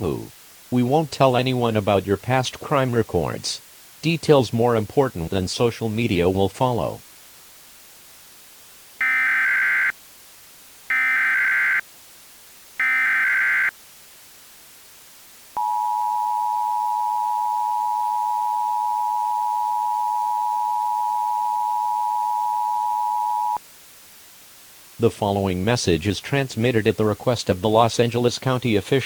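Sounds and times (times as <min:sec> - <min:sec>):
two-tone attention signal: 0:09.0 - 0:09.9, 0:12.8 - 0:13.7, 0:15.6 - 0:23.6.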